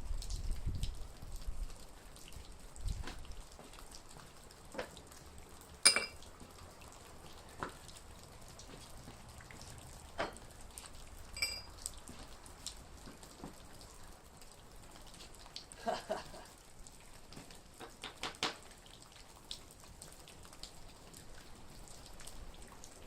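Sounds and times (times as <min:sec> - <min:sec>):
water dripping into puddle: 0:00.0 - 0:23.0
ringing metallic clinks: 0:05.9 - 0:06.2, 0:11.4 - 0:11.7.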